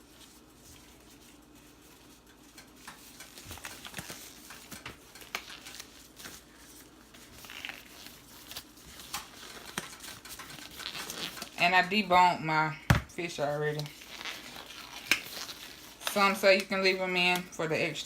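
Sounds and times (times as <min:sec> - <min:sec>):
utensils clicking and tapping: 0:02.2 - 0:06.4, 0:08.9 - 0:11.6.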